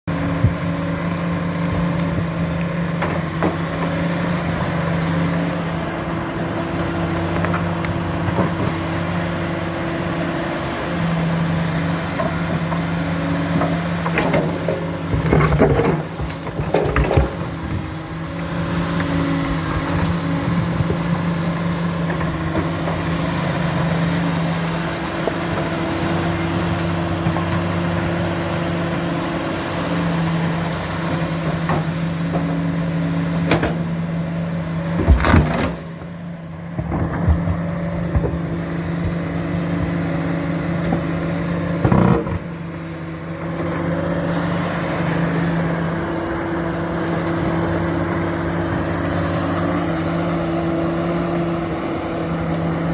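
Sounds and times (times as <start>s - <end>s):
excavator diesel engine droning: 0.0s - 52.9s.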